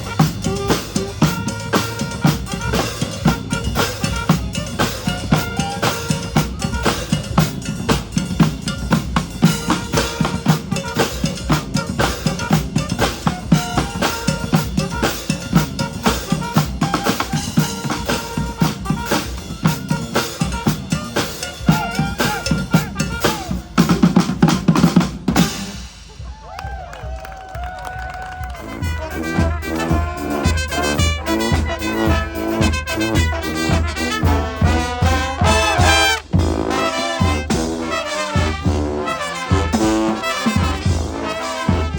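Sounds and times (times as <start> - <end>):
held instrument notes: 0.0 - 26.4
brass band playing jazz: 0.0 - 41.9
snare and bass drums beating: 0.0 - 41.9.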